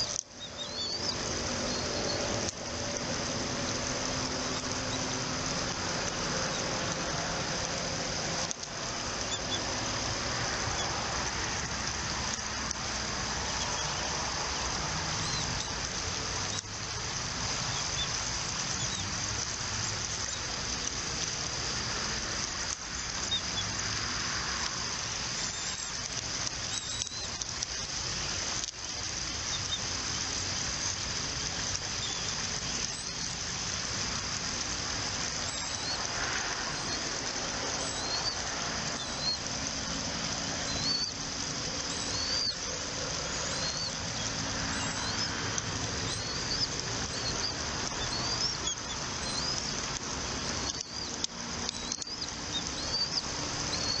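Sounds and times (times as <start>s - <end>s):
high bird chirps: 0.0s - 2.2s, 37.8s - 38.4s, 40.6s - 41.2s, 41.9s - 45.4s, 46.0s - 49.8s, 50.6s - 54.0s
steady outdoor hiss: 0.0s - 54.0s.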